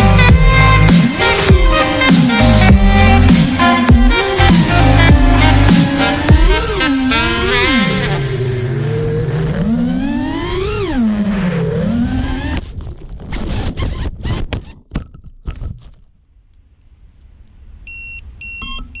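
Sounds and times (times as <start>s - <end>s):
drone motors whining: 0.0s - 14.8s
knocks and scrapes: 12.5s - 16.2s
short electronic beeps: 17.9s - 19.0s.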